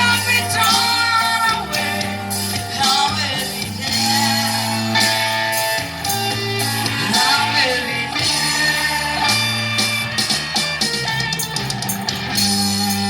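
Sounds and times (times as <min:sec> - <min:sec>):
person singing: 0:00.0 - 0:10.3
guitar-led band: 0:00.0 - 0:13.0.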